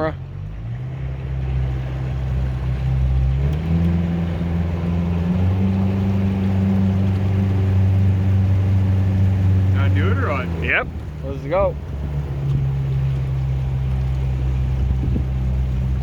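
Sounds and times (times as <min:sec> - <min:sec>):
motorboat engine running: 0:00.0 - 0:16.0.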